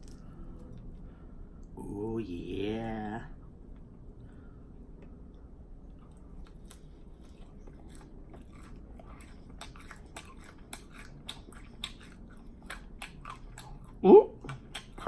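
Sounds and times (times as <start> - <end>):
person chewing with lip smacks: 5.8 - 15.0.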